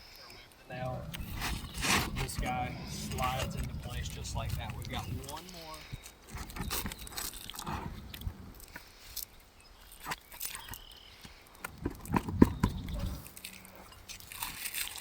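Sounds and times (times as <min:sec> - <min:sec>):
tool tapping and scraping shingle: 0:00.9 - 0:08.0, 0:11.6 - 0:14.2.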